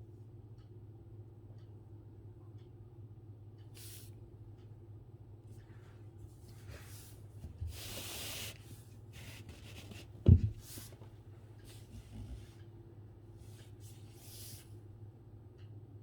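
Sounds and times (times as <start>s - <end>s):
steady low hum: 0.0s - 16.0s
brush strokes swishing on paper: 6.6s - 10.0s, 13.4s - 14.7s
dull knock: 10.2s - 10.6s.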